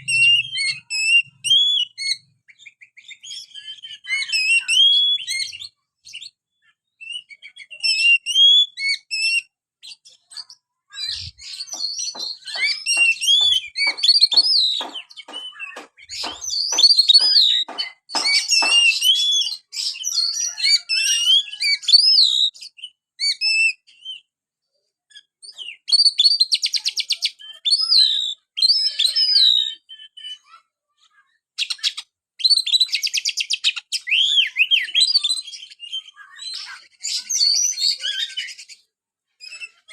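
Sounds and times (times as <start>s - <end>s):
bird singing whistled phrases: 0.0s - 24.3s, 25.5s - 30.6s, 31.6s - 38.7s
bird sharp clicking notes: 11.6s - 19.2s.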